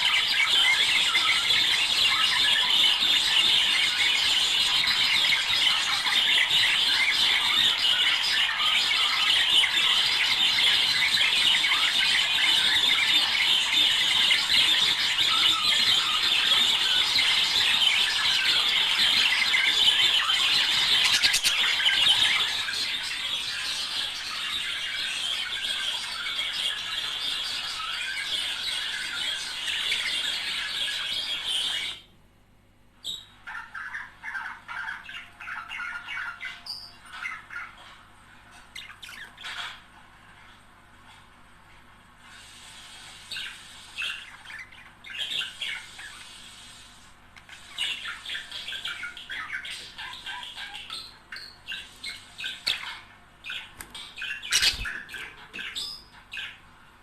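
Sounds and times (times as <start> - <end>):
budgerigars chattering: 0.0 - 32.0, 47.6 - 56.6.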